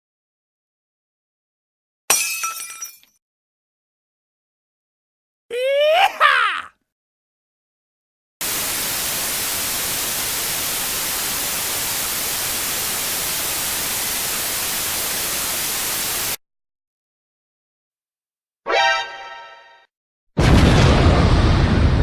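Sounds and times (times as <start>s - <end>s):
static hiss: 8.4s - 16.4s.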